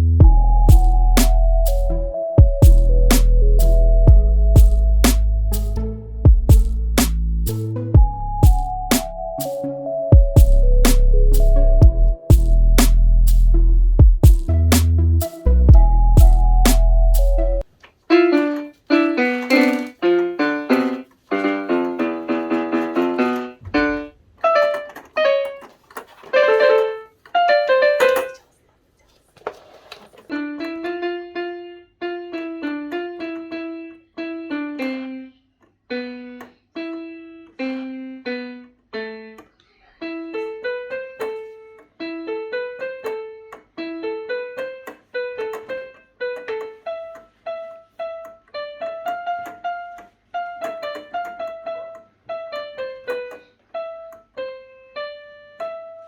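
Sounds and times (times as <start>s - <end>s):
electronic keyboard melody: 0.0s - 28.4s, 30.3s - 39.4s, 40.0s - 56.0s.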